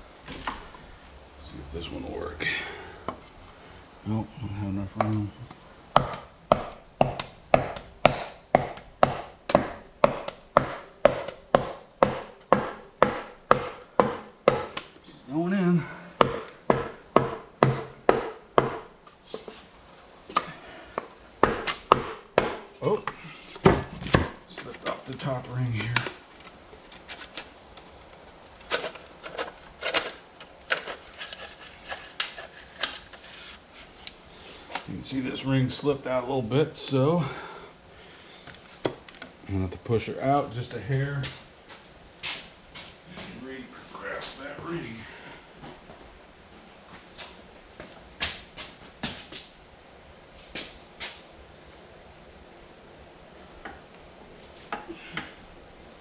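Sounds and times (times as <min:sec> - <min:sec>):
faint high whine: 0:00.0 - 0:08.5, 0:14.9 - 0:16.7, 0:30.8 - 0:56.0
hammer tapping wood block: 0:06.0 - 0:14.6.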